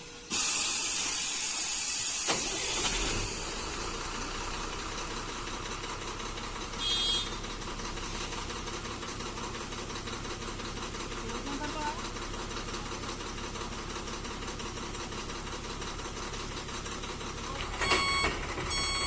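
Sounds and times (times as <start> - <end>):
tractor engine idling: 0.0 - 19.0
loud hiss: 0.3 - 3.8.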